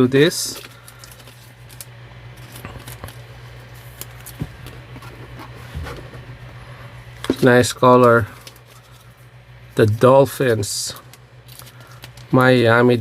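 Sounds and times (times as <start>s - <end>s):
low hum: 0.0s - 10.4s
cards crinkling and clicking: 0.3s - 5.5s, 7.3s - 9.2s, 9.8s - 13.0s
foil pack tearing: 11.0s - 12.7s.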